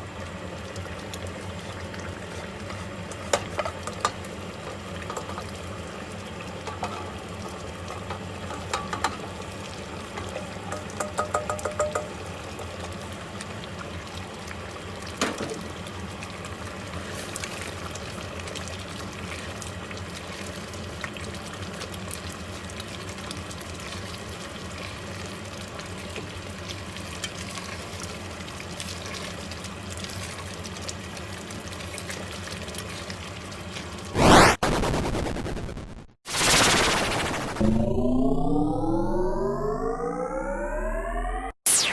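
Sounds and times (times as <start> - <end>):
curry bubbling in a pot: 0.0 - 34.1
loud rising whoosh: 34.2 - 41.9.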